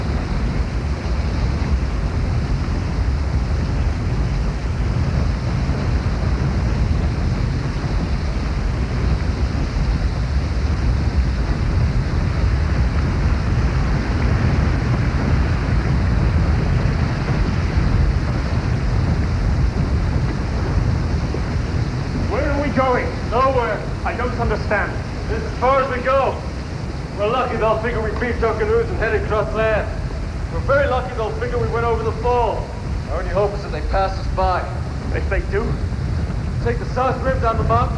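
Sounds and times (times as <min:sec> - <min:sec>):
waterfall rushing: 0:20.4 - 0:35.0.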